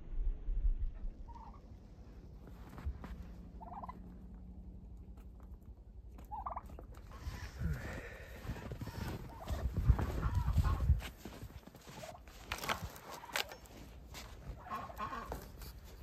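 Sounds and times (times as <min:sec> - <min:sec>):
poultry calling: 0:03.6 - 0:04.1, 0:06.2 - 0:11.0, 0:14.5 - 0:15.8.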